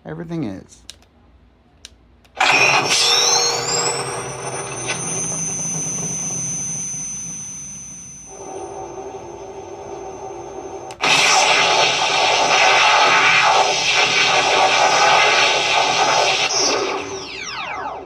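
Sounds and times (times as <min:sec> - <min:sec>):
power-up whine rising in pitch: 0:02.4 - 0:18.0
loud rushing noise effect: 0:11.0 - 0:18.0.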